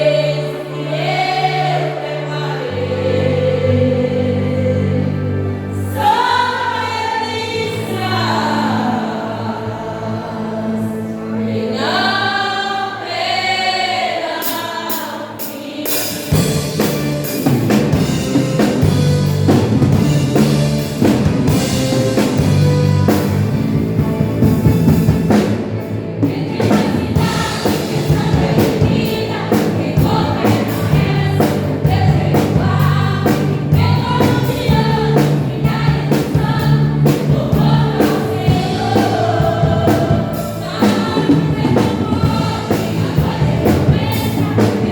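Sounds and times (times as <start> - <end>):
women's choir singing: 0.0 - 16.7, 26.2 - 44.9
band with bass and beat: 15.9 - 44.9.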